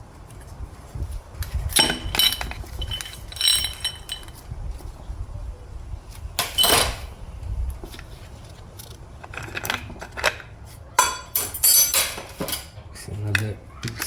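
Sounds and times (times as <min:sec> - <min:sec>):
metal parts clinking: 0:01.4 - 0:04.4, 0:06.4 - 0:07.2, 0:09.2 - 0:13.5.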